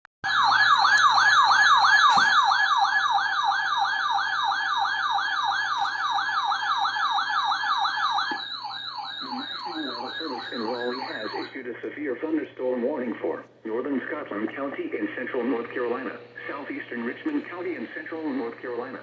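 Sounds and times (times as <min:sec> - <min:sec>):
electronic siren yelping: 0:00.2 - 0:11.7.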